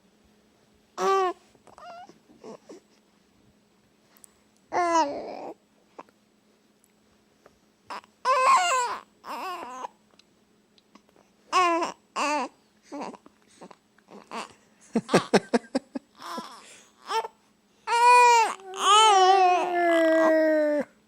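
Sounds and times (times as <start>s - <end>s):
baby crying: 1.0s - 2.6s, 4.7s - 5.6s, 7.9s - 9.9s, 11.5s - 13.2s, 14.1s - 14.5s, 16.2s - 20.9s
baby babbling and fussing: 1.0s - 2.9s, 4.7s - 6.1s, 7.9s - 10.0s, 10.9s - 14.6s, 16.2s - 21.0s.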